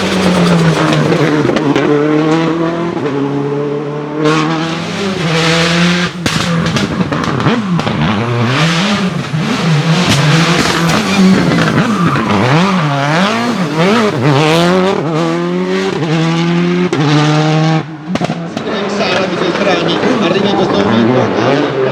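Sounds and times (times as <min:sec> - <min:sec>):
exhaust pops and cracks: 0:00.0 - 0:02.5, 0:04.9 - 0:16.1, 0:18.0 - 0:19.7
rally car engine revving: 0:00.0 - 0:21.9.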